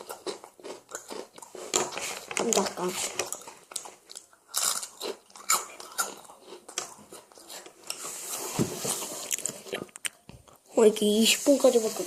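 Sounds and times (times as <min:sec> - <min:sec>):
crunching crispy snack: 0:03.3 - 0:07.0.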